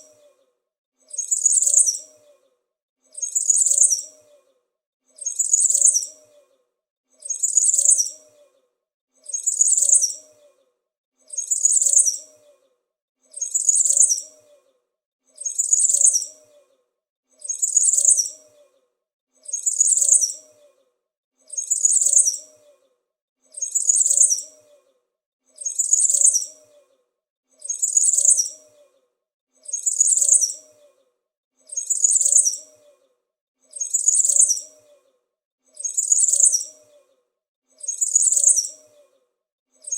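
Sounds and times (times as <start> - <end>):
small bird chirping: 0.0 - 0.5, 1.1 - 4.6, 5.2 - 6.6, 7.2 - 8.6, 9.2 - 10.7, 11.3 - 12.7, 13.3 - 14.8, 15.4 - 16.8, 17.4 - 18.8, 19.4 - 22.9, 23.5 - 24.9, 25.5 - 27.0, 27.6 - 29.0, 29.6 - 37.2, 37.8 - 39.2.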